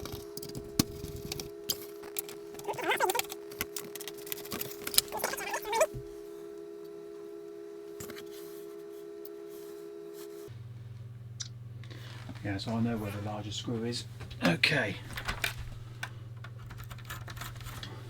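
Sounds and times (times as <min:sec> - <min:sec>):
electrical hum: 0:00.0 - 0:18.0
wavering squeaks: 0:02.5 - 0:03.4, 0:05.0 - 0:06.0.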